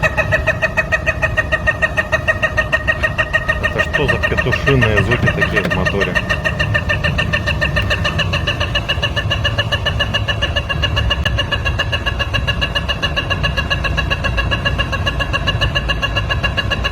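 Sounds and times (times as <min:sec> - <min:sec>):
car engine running: 0:00.0 - 0:12.8
high-pitched pulsing chirping: 0:00.0 - 0:16.9.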